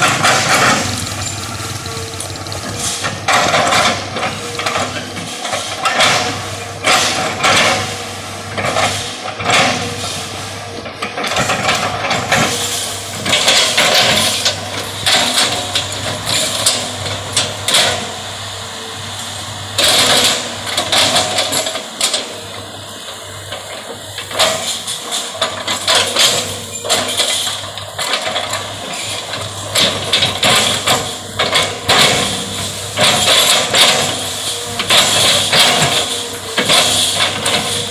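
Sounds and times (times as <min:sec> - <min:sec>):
machine clanks and clatter: 0:00.0 - 0:18.2, 0:19.8 - 0:37.9
diesel engine running: 0:00.0 - 0:37.9.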